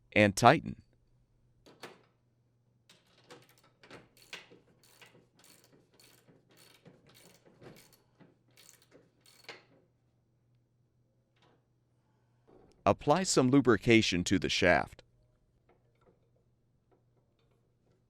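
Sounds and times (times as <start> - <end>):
ratchet wrench clicking: 2.9 - 9.7.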